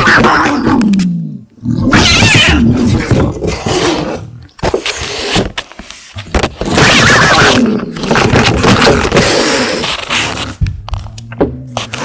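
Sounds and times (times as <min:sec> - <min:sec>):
cat yowling and growling: 0:00.0 - 0:01.0, 0:01.7 - 0:04.3, 0:06.7 - 0:07.9.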